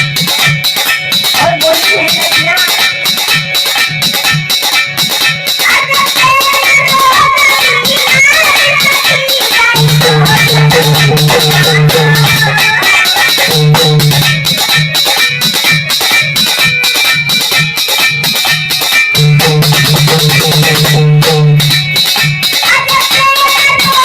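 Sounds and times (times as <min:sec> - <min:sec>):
steady drum rhythm: 0:00.0 - 0:24.0
low bass notes: 0:09.8 - 0:12.5, 0:13.5 - 0:14.4, 0:19.2 - 0:22.0.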